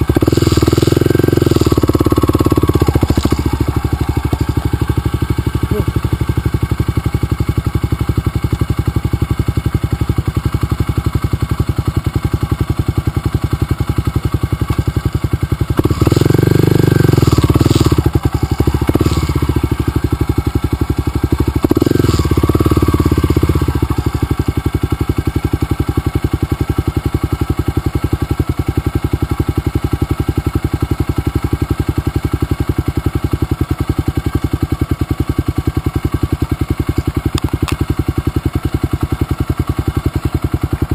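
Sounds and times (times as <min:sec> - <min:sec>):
motorcycle engine idling and revving: 0:00.0 - 0:40.9.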